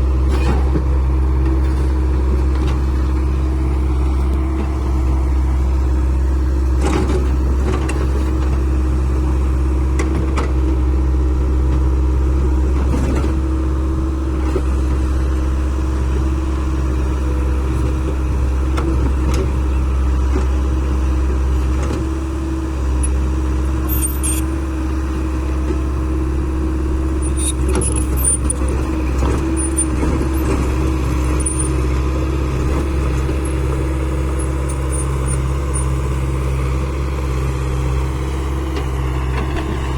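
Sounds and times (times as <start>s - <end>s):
diesel engine running under load: 0.0s - 39.9s
high squeaks: 23.0s - 24.6s, 27.1s - 28.7s, 29.5s - 30.0s, 31.2s - 31.8s, 32.8s - 36.0s.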